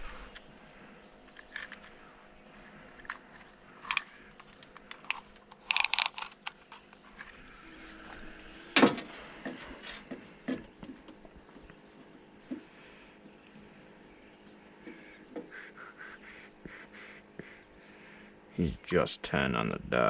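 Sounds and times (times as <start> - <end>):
gear clicking and rattling: 2.7 - 7.5.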